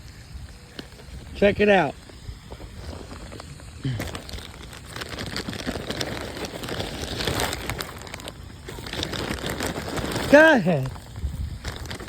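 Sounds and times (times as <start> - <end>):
snack bag crinkling: 2.0 - 12.0
chips shaken out ticking: 4.2 - 12.0.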